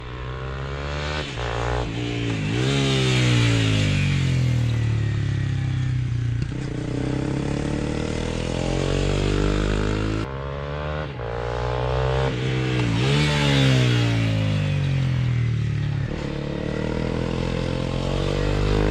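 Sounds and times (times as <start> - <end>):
motorcycle engine revving: 0.0 - 18.9.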